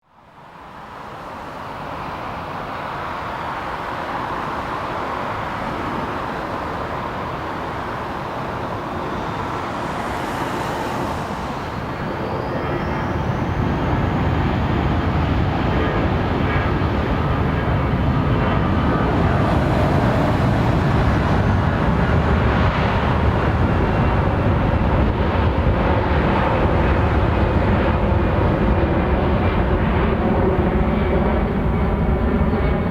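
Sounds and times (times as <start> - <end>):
high engine whine: 0.1 - 32.9
jet engines rushing: 0.2 - 32.9
deep rumble: 7.6 - 25.9.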